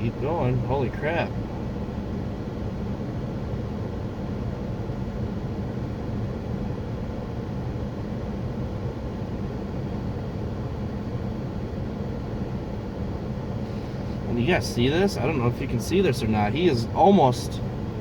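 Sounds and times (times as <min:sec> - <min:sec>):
car engine hum inside cabin: 0:00.0 - 0:18.0.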